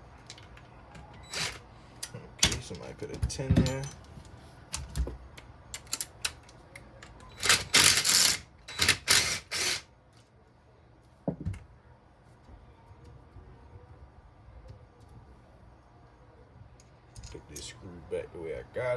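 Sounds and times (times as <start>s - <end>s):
ratchet wrench clicking: 7.3s - 9.8s
knock: 11.3s - 11.6s.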